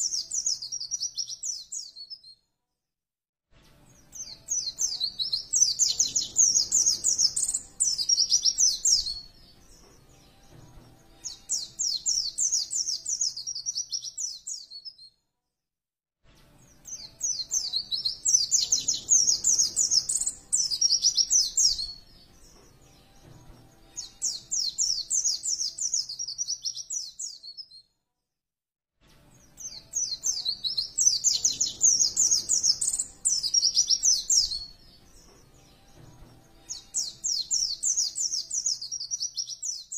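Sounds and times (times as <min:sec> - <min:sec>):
bird twittering song: 0:00.0 - 0:02.4, 0:04.1 - 0:10.2, 0:11.2 - 0:15.1, 0:16.8 - 0:23.3, 0:23.9 - 0:27.8, 0:29.6 - 0:35.4, 0:36.6 - 0:39.9.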